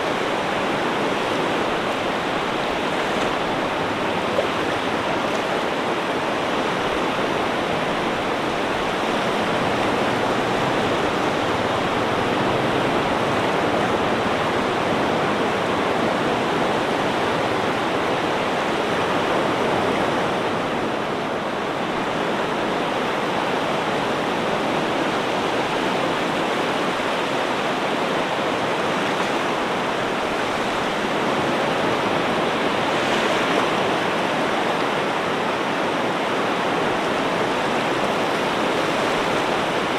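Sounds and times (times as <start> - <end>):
ocean surf rushing: 0.0 - 39.9.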